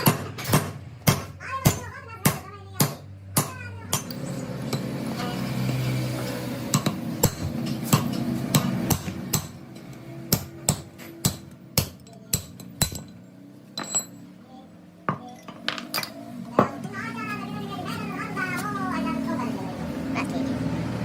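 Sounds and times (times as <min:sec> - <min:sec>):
hammer striking metal: 0:00.0 - 0:13.2.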